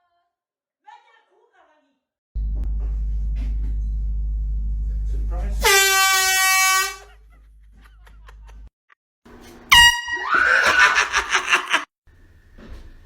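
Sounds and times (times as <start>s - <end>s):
handheld air horn blast: 5.6s - 7.2s, 9.7s - 10.3s
person screaming: 10.2s - 11.2s.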